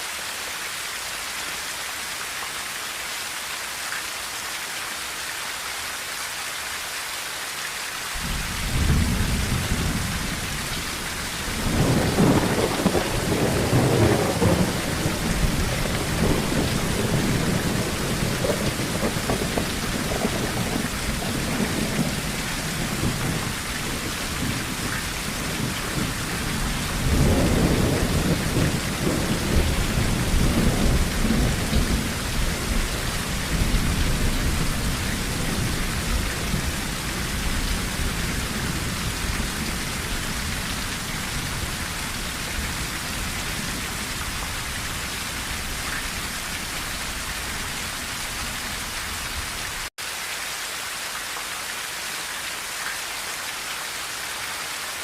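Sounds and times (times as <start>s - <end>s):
rain drumming on a tin roof: 7.7s - 55.0s
thunder rolling: 8.2s - 40.2s.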